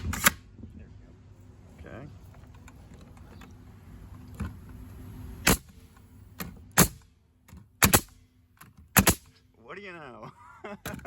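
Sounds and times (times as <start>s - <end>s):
nail gun shots: 0.0s - 0.4s, 5.4s - 5.8s, 6.4s - 7.1s, 7.8s - 8.2s, 8.9s - 9.4s.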